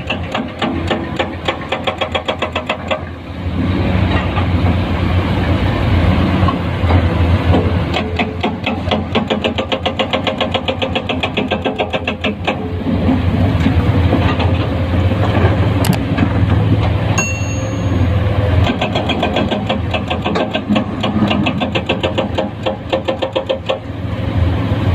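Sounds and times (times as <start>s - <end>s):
excavator diesel engine rumbling: 0.0s - 24.9s
brief high tone: 17.2s - 18.4s.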